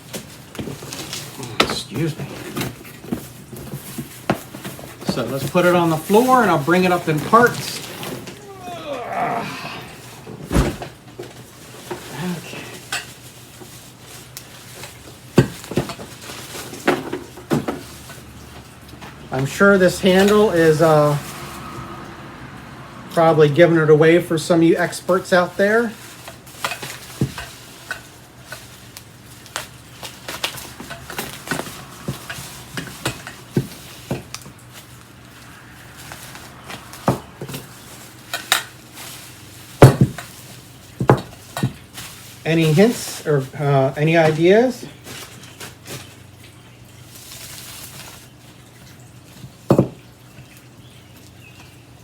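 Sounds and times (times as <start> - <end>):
packaging rustling: 0.0 - 18.1, 25.7 - 43.3.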